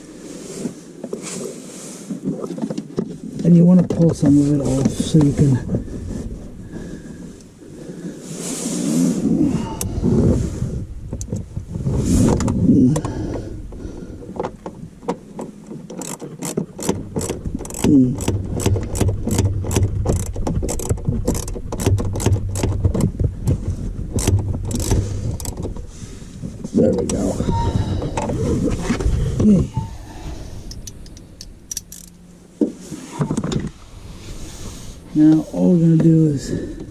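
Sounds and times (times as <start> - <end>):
ratchet wrench clicking: 15.9 - 22.8, 24.2 - 25.6, 30.7 - 32.2.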